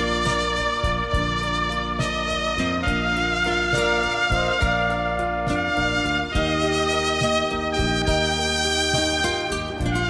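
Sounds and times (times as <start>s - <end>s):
horn-like melody notes: 0.0s - 10.0s
steady beat: 0.0s - 10.0s.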